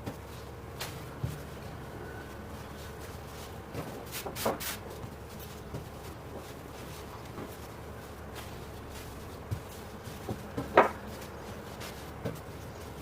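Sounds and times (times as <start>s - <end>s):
handling noises: 0.0s - 13.0s.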